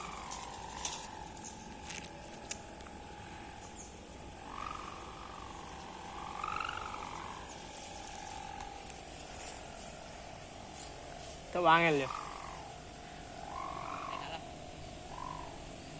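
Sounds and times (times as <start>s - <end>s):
kite hummer droning: 0.0s - 15.9s
higher wobbling tone: 3.0s - 15.7s.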